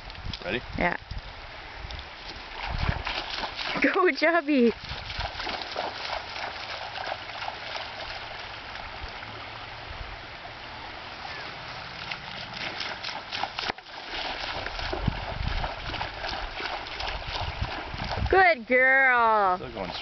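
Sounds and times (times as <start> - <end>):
lake water lapping: 0.0 - 20.0
small water splashes: 1.8 - 20.0.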